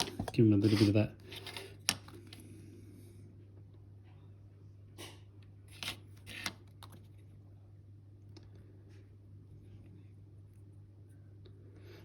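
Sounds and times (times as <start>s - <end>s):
small tools scraping and clicking: 0.0s - 2.4s.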